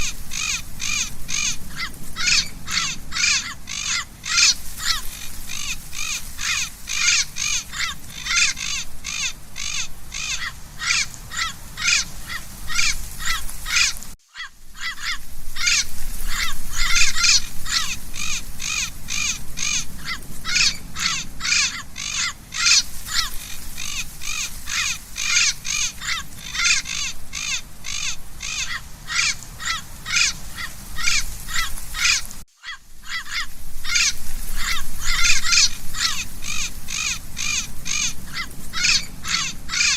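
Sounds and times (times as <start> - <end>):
parrots squawking: 0.0 - 39.9.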